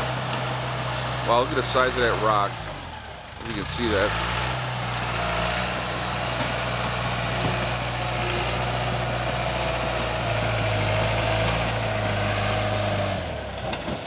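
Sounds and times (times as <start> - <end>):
bulldozer diesel engine running: 0.0 - 14.0.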